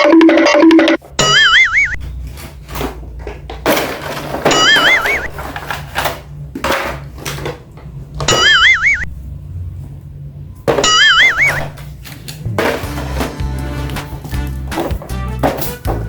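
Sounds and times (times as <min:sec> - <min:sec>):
cartoon warbling sound effect: 0:01.2 - 0:02.0, 0:08.4 - 0:09.1, 0:10.8 - 0:11.8
electronic music loop: 0:12.5 - 0:16.0.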